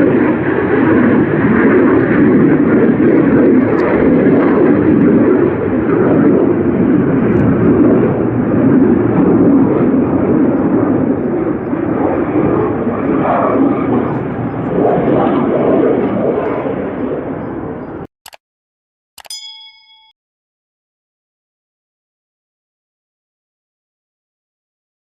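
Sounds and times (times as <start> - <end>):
fighter jet engine roar: 0.0 - 18.1.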